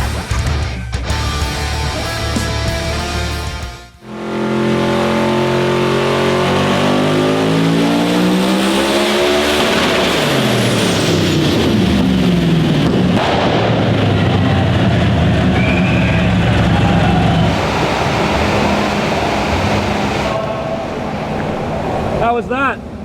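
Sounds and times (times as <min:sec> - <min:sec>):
car engine revving up: 0:04.0 - 0:22.3.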